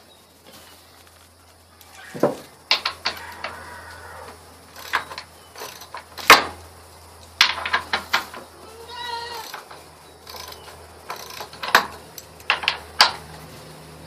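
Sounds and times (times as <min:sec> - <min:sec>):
ratchet wrench clicking: 0:04.7 - 0:06.5, 0:09.3 - 0:13.3.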